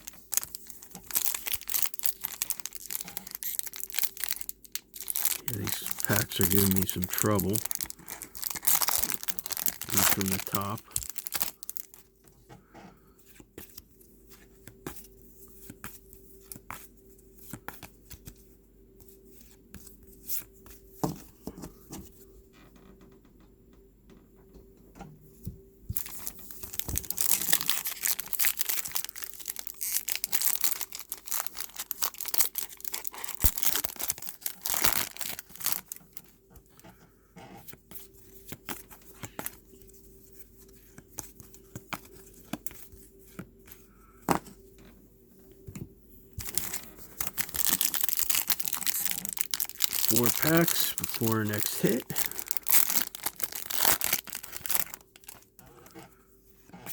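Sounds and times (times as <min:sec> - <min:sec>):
card pack wrapper tearing: 0:00.0 - 0:12.0, 0:26.0 - 0:36.0, 0:46.4 - 0:55.5
wrapper crinkling: 0:00.0 - 0:12.0, 0:26.0 - 0:36.3, 0:46.4 - 0:55.6.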